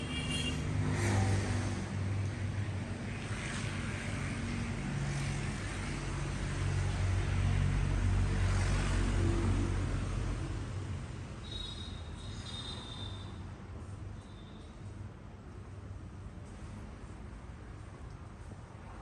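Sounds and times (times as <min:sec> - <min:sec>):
road traffic engines humming: 0:00.0 - 0:19.0.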